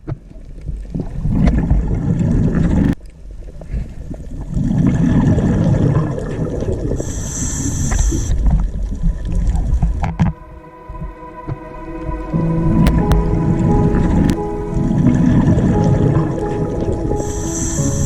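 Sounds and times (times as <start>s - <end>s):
sea water surging: 3.4s - 18.0s
brief high-pitched sound: 10.1s - 18.0s.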